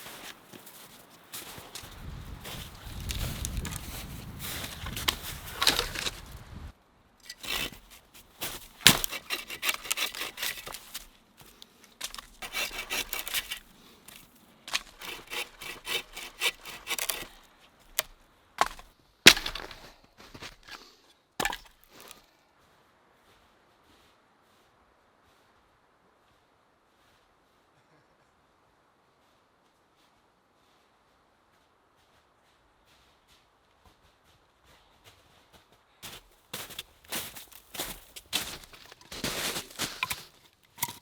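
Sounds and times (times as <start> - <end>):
branches snapping: 0.1 - 20.8, 36.6 - 41.0
hand saw rasping through wood: 5.0 - 6.3, 7.3 - 11.2, 12.0 - 19.8.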